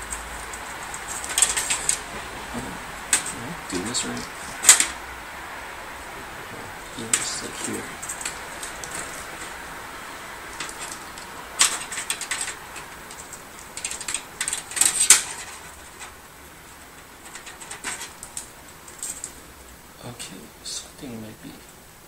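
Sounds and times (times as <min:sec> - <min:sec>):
computer parts clicking and rattling: 0:00.0 - 0:02.4, 0:03.0 - 0:05.0, 0:06.8 - 0:19.4.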